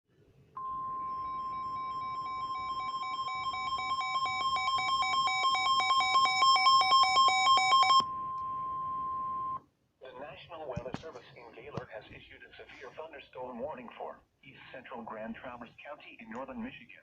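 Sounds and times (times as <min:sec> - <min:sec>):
steady high alarm tone: 0:00.6 - 0:09.6.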